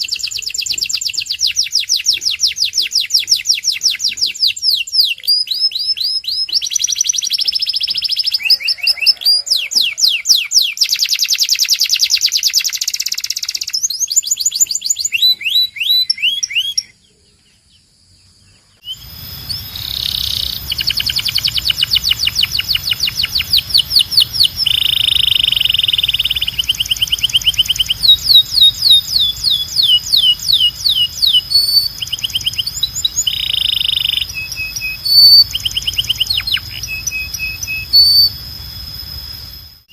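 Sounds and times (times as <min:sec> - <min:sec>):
canary singing trills: 0:00.0 - 0:17.9, 0:18.8 - 0:39.9
steady low hum: 0:18.9 - 0:39.9.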